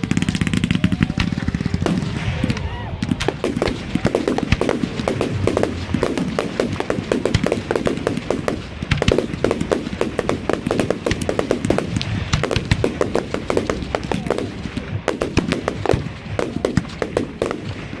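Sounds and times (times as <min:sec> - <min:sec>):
firework bangs and crackles: 0:00.0 - 0:18.0
low rumble: 0:00.8 - 0:10.5.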